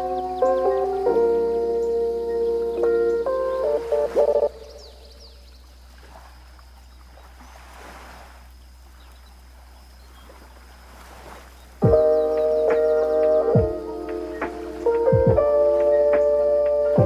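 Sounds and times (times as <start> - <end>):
high bird chirps: 0.0 - 5.8, 11.6 - 17.0
faint sea waves washing: 0.0 - 17.0.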